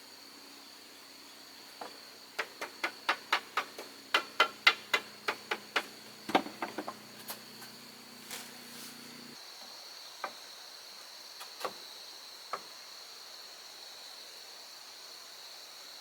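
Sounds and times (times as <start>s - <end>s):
insects whining: 0.0s - 14.3s
sharp knocks on wood: 1.8s - 7.8s.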